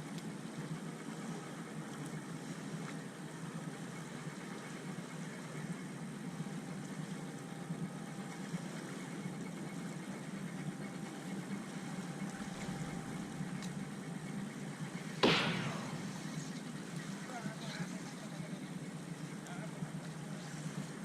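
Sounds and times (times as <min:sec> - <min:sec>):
boat engine running: 0:02.3 - 0:17.4.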